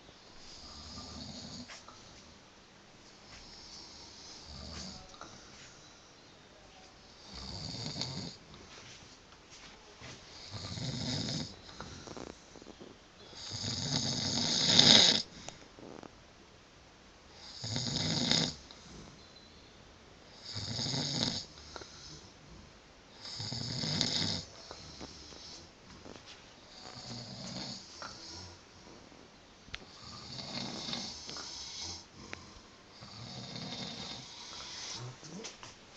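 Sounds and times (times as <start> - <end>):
man snoring: 0.4 - 1.7, 3.4 - 5.2, 7.2 - 8.4, 10.3 - 16.1, 17.4 - 19.1, 20.3 - 22.4, 23.2 - 25.7, 26.7 - 28.6, 29.9 - 35.4.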